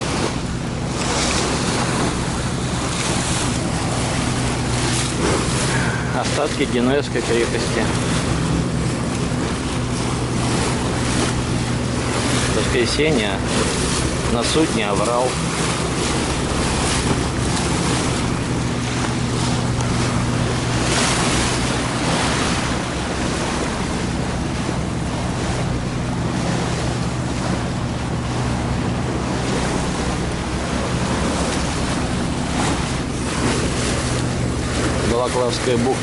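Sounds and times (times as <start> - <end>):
motor boat engine running: 0.0 - 36.0
water rushing along hull: 0.0 - 36.0
wind buffeting microphone: 0.0 - 36.0.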